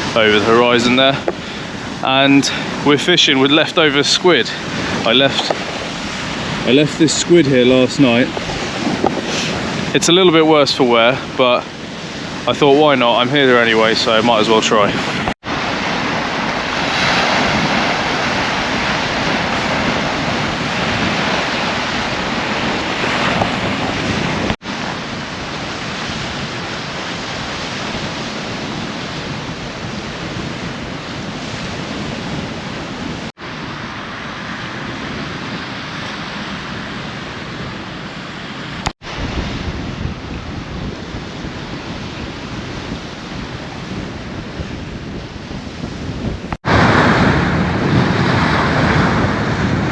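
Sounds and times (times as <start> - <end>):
sea waves washing on shore: 0.0 - 49.9
wind buffeting microphone: 0.0 - 49.9.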